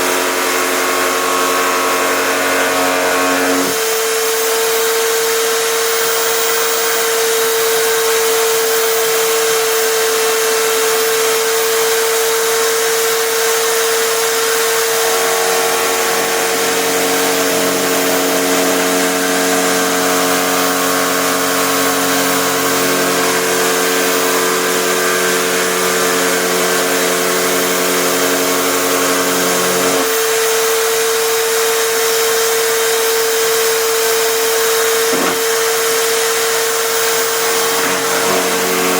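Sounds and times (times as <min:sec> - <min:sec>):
electric drill spinning router bit: 0:00.0 - 0:38.9
router bit cutting plywood: 0:00.0 - 0:38.9.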